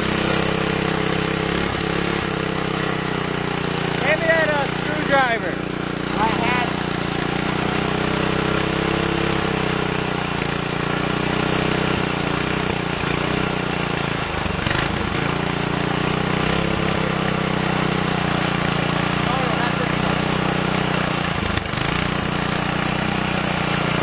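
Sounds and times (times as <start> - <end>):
small engine running: 0.0 - 24.0.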